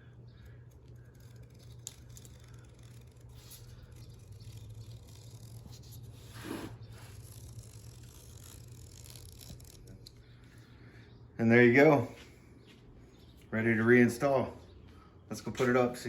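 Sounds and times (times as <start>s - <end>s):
steady low hum: 0.0s - 16.0s
utility knife scraping mesh: 0.7s - 10.2s.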